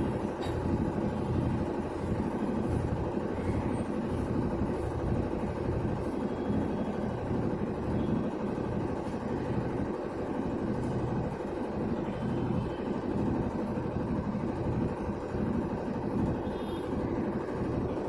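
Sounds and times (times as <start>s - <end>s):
washing machine running: 0.0s - 18.0s.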